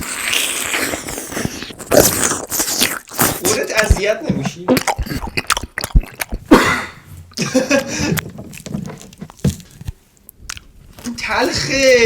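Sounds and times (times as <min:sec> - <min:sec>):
mouth eating noises: 0:00.0 - 0:11.9
breathy bursts: 0:06.5 - 0:07.1.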